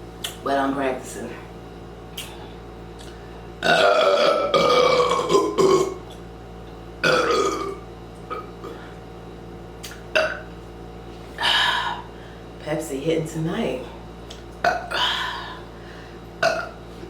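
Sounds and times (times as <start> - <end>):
person burping: 3.6 - 6.0, 7.0 - 8.8, 10.1 - 10.5, 14.6 - 15.6, 16.4 - 16.8.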